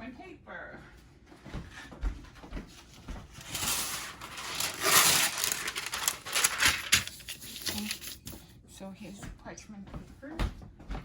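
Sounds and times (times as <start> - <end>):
parchment paper rustling: 2.7 - 8.6.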